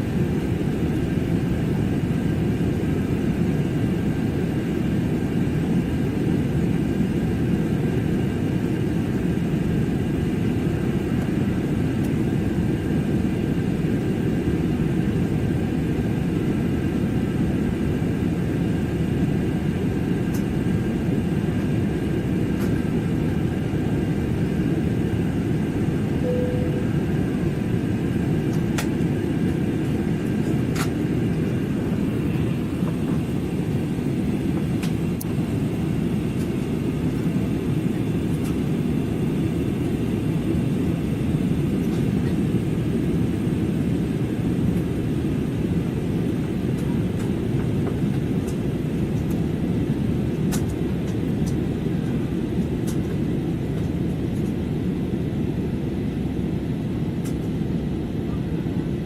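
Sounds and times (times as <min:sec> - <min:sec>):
faint steady whines: 0:00.0 - 0:59.0
jet engine cabin rumble: 0:00.0 - 0:59.0.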